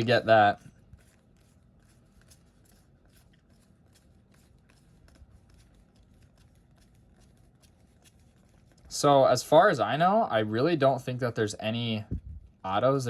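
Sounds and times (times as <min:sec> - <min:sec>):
trading cards flipped by hand: 0:00.6 - 0:08.9.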